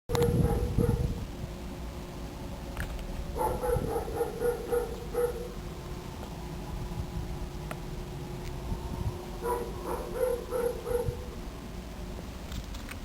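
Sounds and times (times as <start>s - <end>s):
dog barking: 0.2s - 1.2s, 3.4s - 5.6s, 9.4s - 11.3s.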